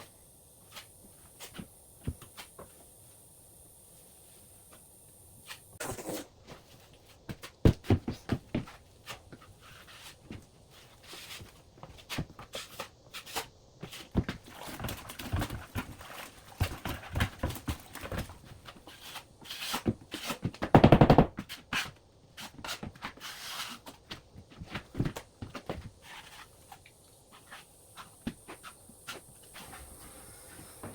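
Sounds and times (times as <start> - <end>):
drywall knife scraping compound: 18.8 - 20.4, 21.5 - 24.0.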